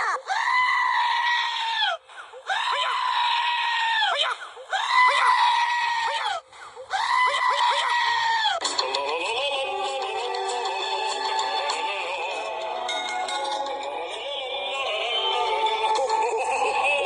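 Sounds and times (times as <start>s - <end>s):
long high-pitched screams: 0.2s - 8.6s.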